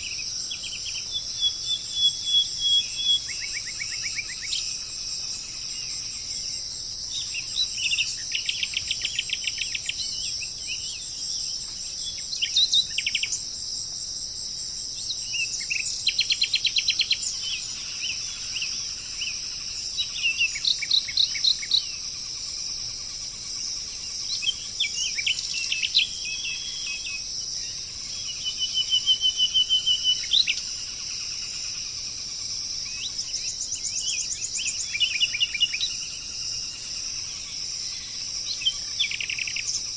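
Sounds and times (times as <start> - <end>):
insect chorus: 0.0 - 39.9
songbirds singing: 0.0 - 39.9.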